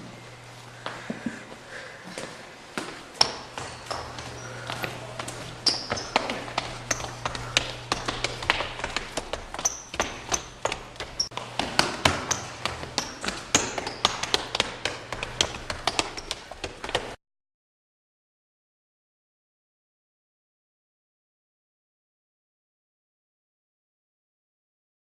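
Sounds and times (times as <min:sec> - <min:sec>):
low steady hum: 0:00.0 - 0:17.2
rapid irregular tapping and knocking: 0:03.2 - 0:17.2.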